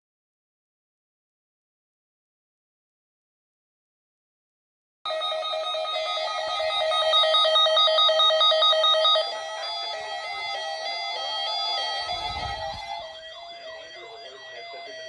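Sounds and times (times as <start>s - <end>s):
electronic alert tones trilling: 5.1s - 15.0s.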